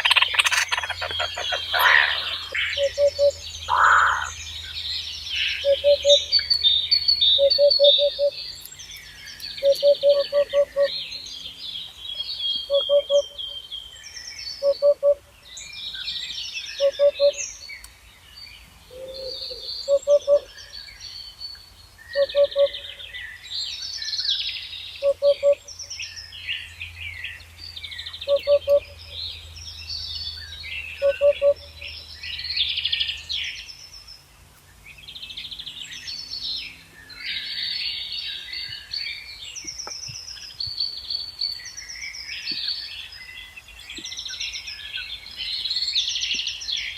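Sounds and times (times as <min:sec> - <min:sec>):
low double-noted bird call: 0:00.0 - 0:04.4
many songbirds singing: 0:00.0 - 0:46.9.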